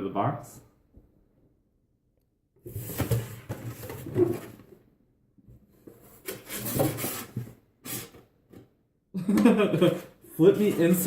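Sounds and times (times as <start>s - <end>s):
cardboard box rubbing and scraping: 6.0s - 8.1s.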